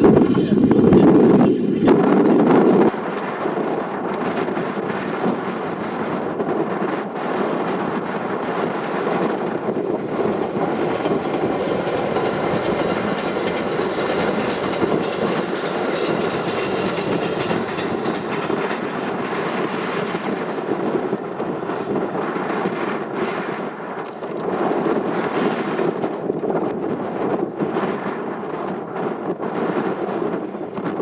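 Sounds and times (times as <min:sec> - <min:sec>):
electric train running past: 0:04.4 - 0:24.0
wheels clicking over rail joints: 0:09.1 - 0:22.3.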